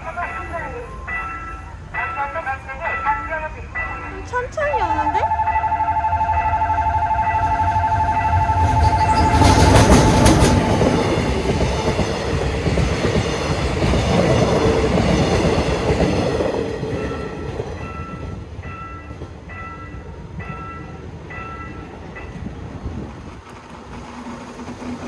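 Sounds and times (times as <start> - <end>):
crossing warning bell ringing: 0.0 - 22.8
train rumbling past: 0.0 - 25.0
train wheel clacks: 6.6 - 25.0.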